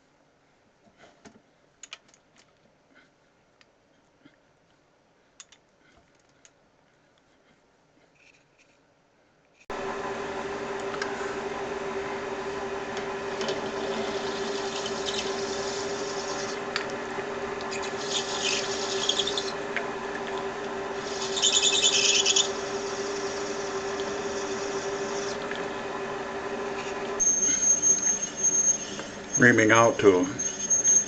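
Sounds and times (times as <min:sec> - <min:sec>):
metal lathe humming: 0:09.7 - 0:31.0
tool scraping brass: 0:13.8 - 0:16.8, 0:17.7 - 0:19.6, 0:21.0 - 0:25.4, 0:26.8 - 0:31.0.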